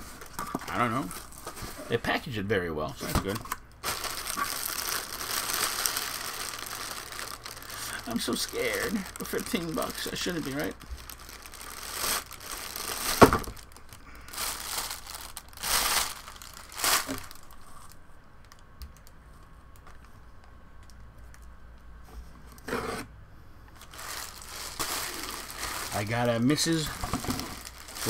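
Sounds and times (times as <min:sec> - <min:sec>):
packaging tearing and crinkling: 0:03.8 - 0:18.0, 0:23.8 - 0:28.0.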